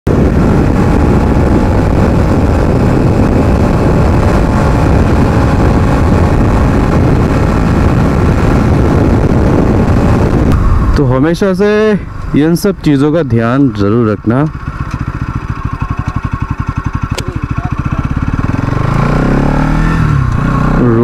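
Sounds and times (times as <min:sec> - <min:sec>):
wind on microphone: 0:00.1 - 0:11.2
motorcycle engine running: 0:00.1 - 0:21.0.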